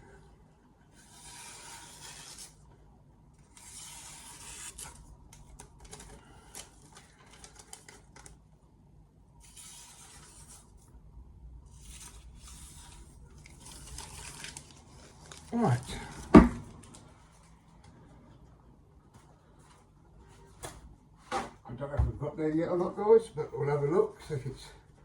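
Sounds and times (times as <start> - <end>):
knife scraping on sharpener: 3.5 - 5.0.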